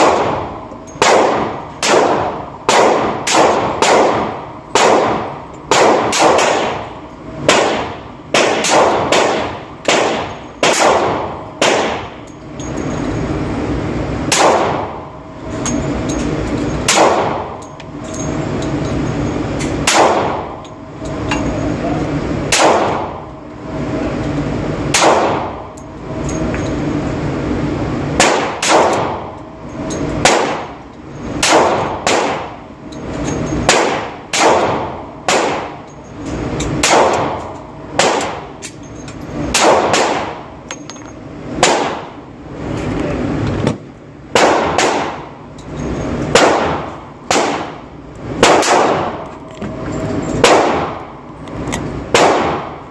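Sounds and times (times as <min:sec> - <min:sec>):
pistol shots: 0:00.0 - 0:12.2, 0:14.3 - 0:15.1, 0:16.8 - 0:17.6, 0:19.8 - 0:20.6, 0:22.5 - 0:23.3, 0:24.9 - 0:25.7, 0:28.2 - 0:29.4, 0:30.2 - 0:30.8, 0:31.4 - 0:32.6, 0:33.7 - 0:35.8, 0:36.8 - 0:38.6, 0:39.5 - 0:40.5, 0:41.6 - 0:42.2, 0:44.3 - 0:45.3, 0:46.3 - 0:49.3, 0:50.4 - 0:51.1, 0:52.1 - 0:52.8.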